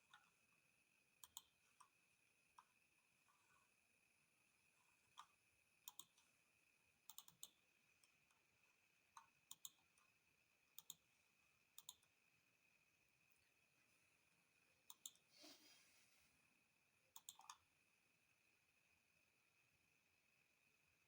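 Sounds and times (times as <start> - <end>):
faint irregular clicks: 0.0 - 0.6, 1.2 - 3.8, 4.6 - 12.2, 14.8 - 15.3, 17.1 - 17.7.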